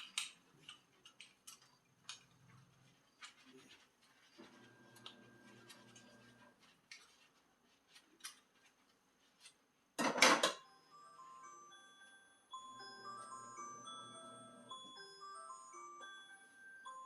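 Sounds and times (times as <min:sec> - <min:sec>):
dishes and cutlery clinking: 0:10.0 - 0:10.6.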